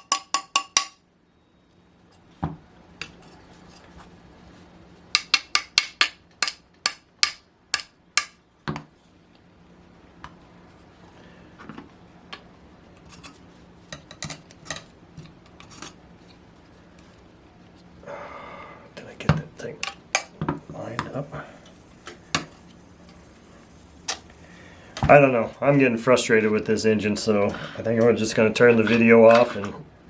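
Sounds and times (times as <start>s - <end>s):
sharp ringing metallic taps: 0.0s - 1.0s
faint steady hum: 0.0s - 30.0s.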